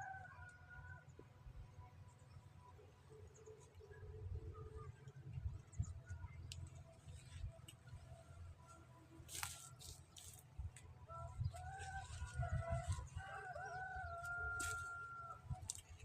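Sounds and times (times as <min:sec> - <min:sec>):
rooster crowing: 0:00.0 - 0:01.1, 0:11.1 - 0:15.4.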